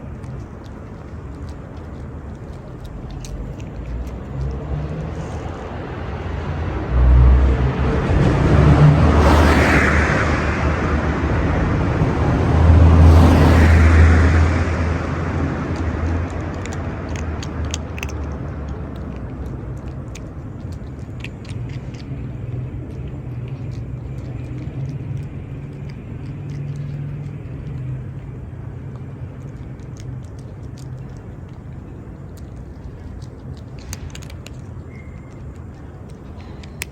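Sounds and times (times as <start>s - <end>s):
steady low engine hum: 0.0s - 36.9s
vehicle passing with deep rumble: 0.0s - 36.9s.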